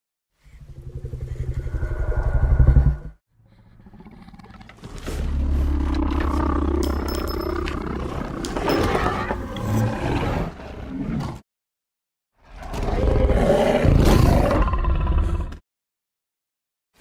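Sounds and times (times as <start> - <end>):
creature roaring: 3.7 - 11.2, 12.5 - 15.6.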